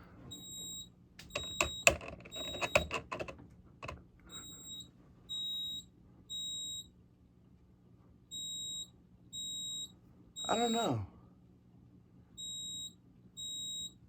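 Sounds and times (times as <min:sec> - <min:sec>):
fire alarm beeping: 0:00.3 - 0:02.9, 0:04.3 - 0:06.9, 0:08.3 - 0:10.9, 0:12.4 - 0:14.0
handling clicks and knocks: 0:01.2 - 0:04.0.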